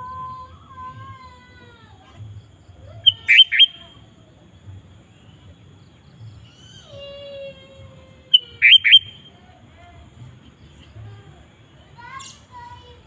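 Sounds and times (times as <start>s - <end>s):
bulbul calling: 3.0s - 4.0s, 8.3s - 9.4s
soft whistled bird notes: 3.1s - 3.8s, 8.4s - 9.4s.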